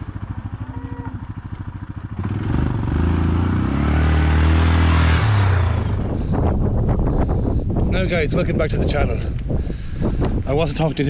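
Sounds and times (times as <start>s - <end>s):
engine idling and revving: 0.0s - 7.0s.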